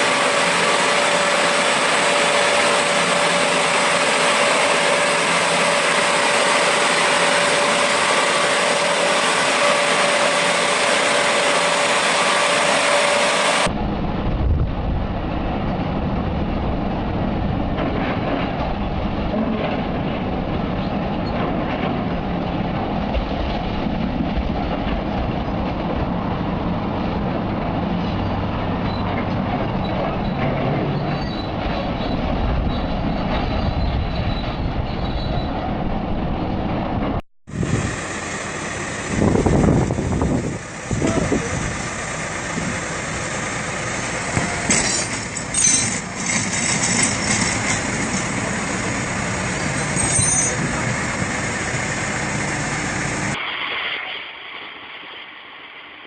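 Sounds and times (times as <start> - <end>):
machine with louder surges: 0.0 - 13.8
heavy machinery rumbling and rattling: 0.0 - 53.4.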